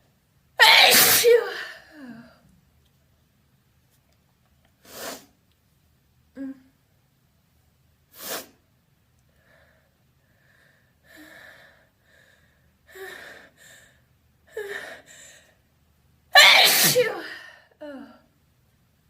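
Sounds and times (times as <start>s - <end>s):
person sneezing loudly: 0.6s - 1.8s, 16.4s - 17.5s.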